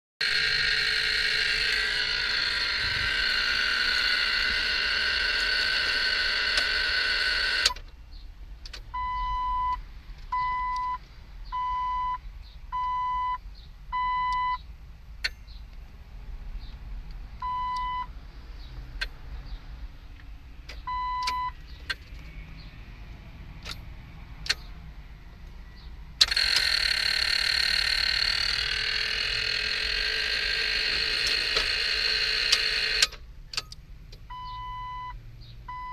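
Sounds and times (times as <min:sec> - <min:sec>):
car warning chime beeping: 0:00.2 - 0:07.8, 0:08.9 - 0:14.6, 0:17.4 - 0:18.1, 0:20.7 - 0:22.1, 0:26.2 - 0:35.9.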